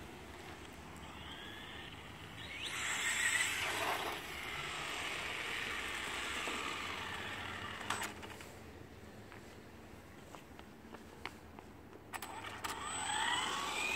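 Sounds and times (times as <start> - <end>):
toy car motor whining: 0.4 - 8.4, 12.2 - 13.9.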